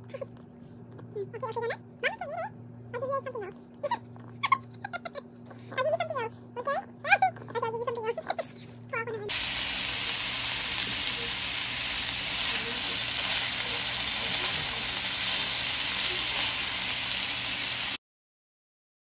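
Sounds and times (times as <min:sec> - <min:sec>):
food sizzling in a pan: 0:09.3 - 0:18.0.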